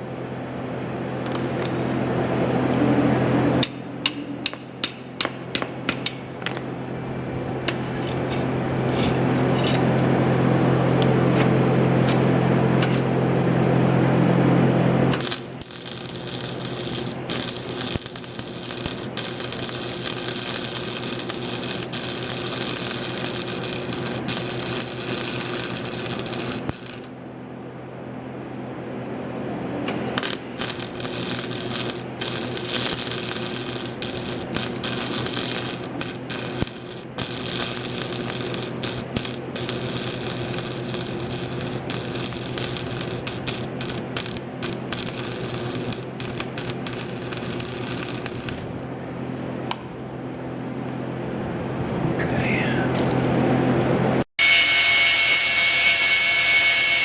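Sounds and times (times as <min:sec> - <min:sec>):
low electrical hum: 0:00.0 - 0:54.3
welding arc crackling: 0:15.1 - 0:27.2, 0:29.9 - 0:49.0, 0:54.4 - 0:57.0.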